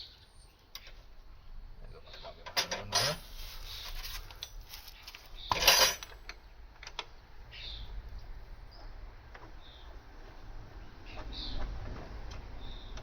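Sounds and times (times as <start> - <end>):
metal tools clinking: 2.1 - 6.2
metal clatter: 5.4 - 6.2.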